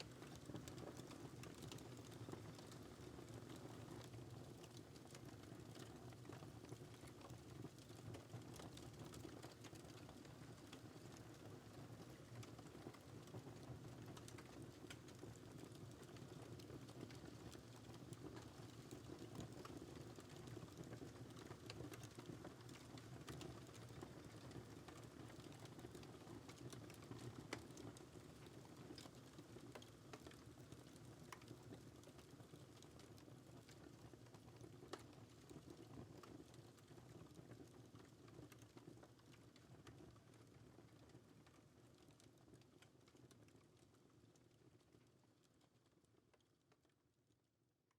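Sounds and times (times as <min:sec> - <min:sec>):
wood fire crackling: 0:00.0 - 0:36.6.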